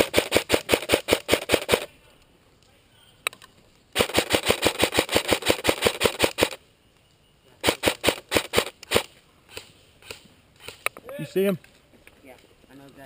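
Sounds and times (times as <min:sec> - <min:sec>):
airsoft rifle shots: 0:00.0 - 0:01.9, 0:04.0 - 0:06.6, 0:07.6 - 0:10.9.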